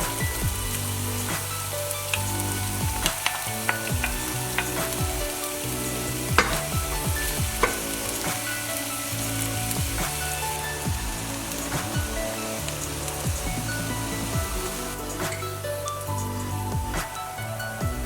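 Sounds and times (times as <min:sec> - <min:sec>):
onions sizzling in a pan: 0:00.0 - 0:17.8
utensil knocking against pan: 0:06.4 - 0:06.8, 0:07.6 - 0:07.9.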